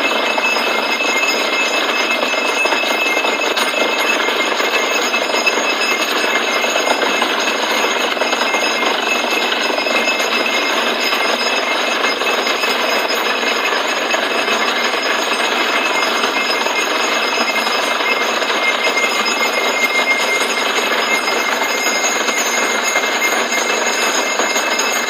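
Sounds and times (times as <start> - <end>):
drilling rig mechanical din: 0.0 - 25.0.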